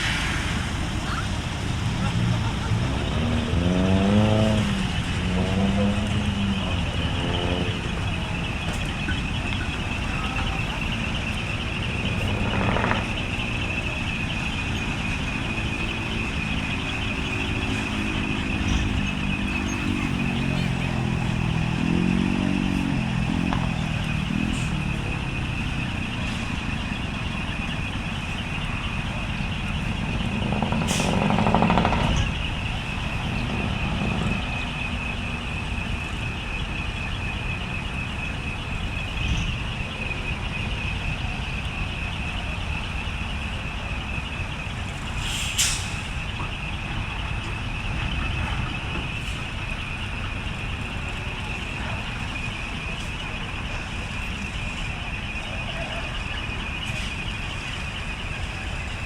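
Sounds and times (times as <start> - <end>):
truck engines running: 0.0 - 59.0
air brake hiss: 45.2 - 46.2.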